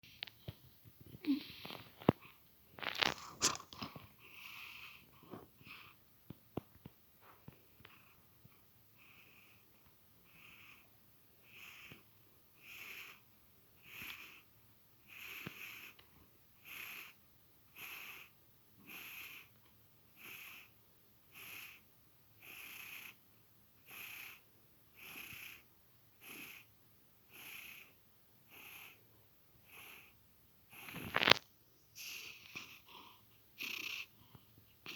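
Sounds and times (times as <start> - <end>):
wheezy snoring: 10.3 - 12.0, 12.6 - 14.5, 15.1 - 16.0, 16.6 - 19.5, 20.2 - 21.8, 22.4 - 23.2, 23.8 - 26.7, 27.3 - 29.0, 29.6 - 31.4, 32.0 - 34.9.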